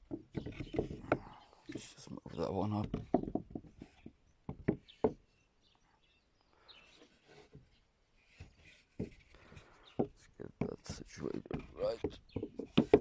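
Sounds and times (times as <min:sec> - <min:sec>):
wood handling taps: 0:00.0 - 0:01.8, 0:02.7 - 0:05.2, 0:08.3 - 0:13.0
wooden pieces knocking together: 0:00.0 - 0:01.8, 0:02.7 - 0:05.2, 0:09.0 - 0:13.0.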